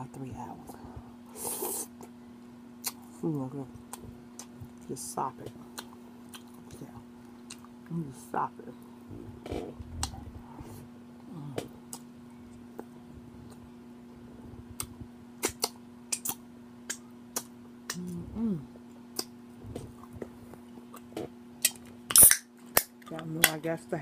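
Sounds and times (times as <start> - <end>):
steady low hum: 0.0 - 24.0
lip smacks and chewing clicks: 3.9 - 4.9, 7.4 - 7.8, 14.8 - 18.1
person humming: 9.0 - 11.9, 17.9 - 18.8.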